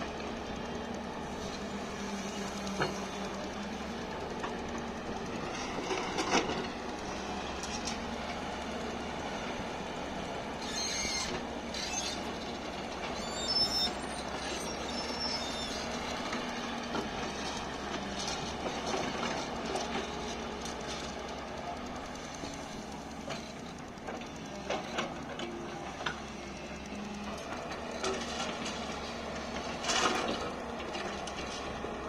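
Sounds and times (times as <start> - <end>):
excavator diesel engine running: 0.0 - 32.0
high-pitched metallic squeals: 10.6 - 12.3, 13.1 - 15.8.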